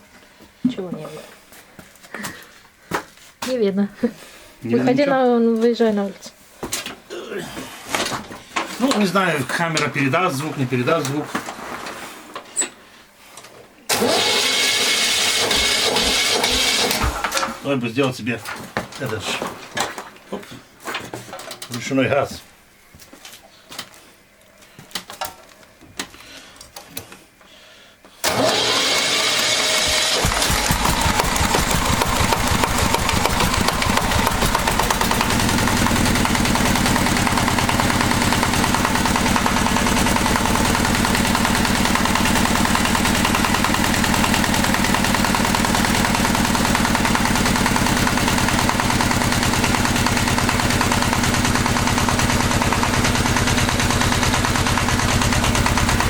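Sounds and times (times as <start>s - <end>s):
diesel engine starting and running: 13.9s - 17.5s, 28.2s - 56.0s.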